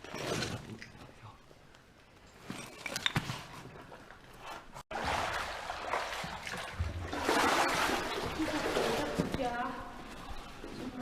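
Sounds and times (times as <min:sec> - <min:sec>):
water sloshing around wading legs: 0:04.9 - 0:11.0.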